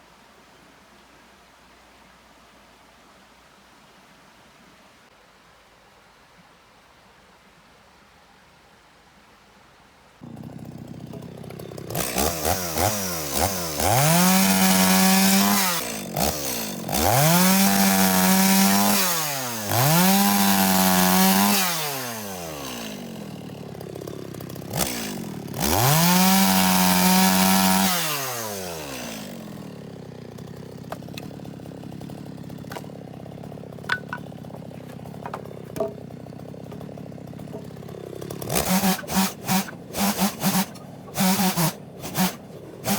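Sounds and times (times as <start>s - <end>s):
chainsaw idling and revving: 10.2s - 42.9s.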